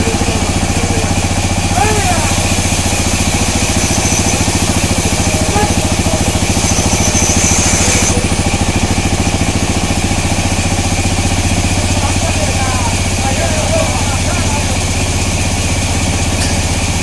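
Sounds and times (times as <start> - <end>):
sawmill machinery pulsing throb: 0.0 - 17.0.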